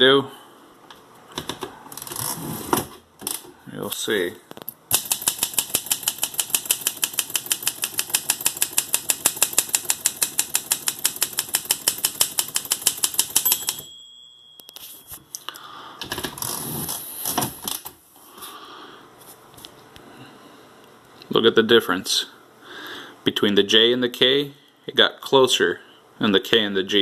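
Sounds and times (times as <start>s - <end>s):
typewriter carriage clattering: 4.9s - 13.9s
typewriter key strikes: 4.9s - 13.9s
typewriter bell ringing: 10.1s - 15.3s.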